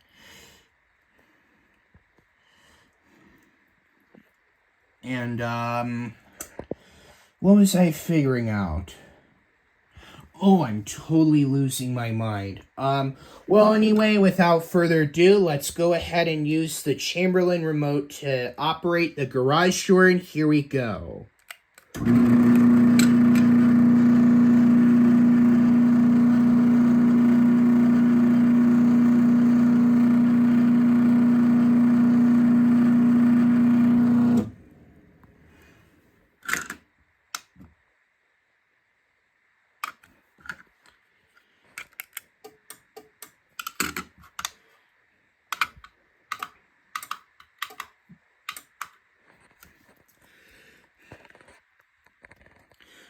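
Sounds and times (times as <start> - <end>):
garage door opener humming: 22.0 - 35.2.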